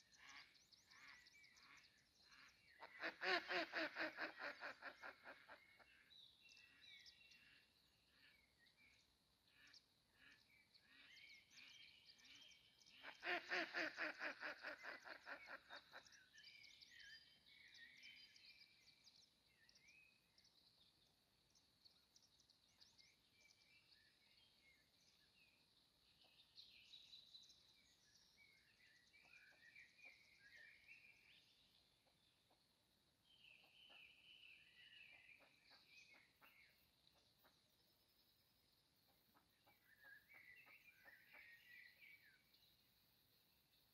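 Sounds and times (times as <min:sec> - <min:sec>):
songbirds chirping and trilling: 0:00.0 - 0:43.9
fast pulsed bird calls: 0:02.8 - 0:06.0, 0:13.0 - 0:16.2.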